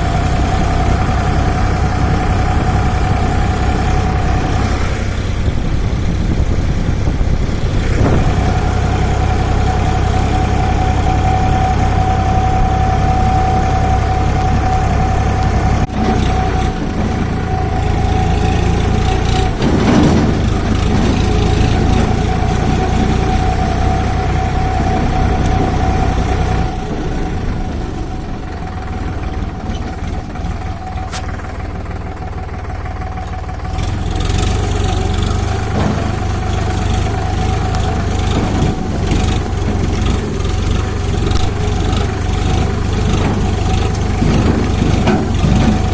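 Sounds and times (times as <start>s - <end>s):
steady tone: 0.0s - 19.0s
tractor engine running: 0.0s - 45.9s.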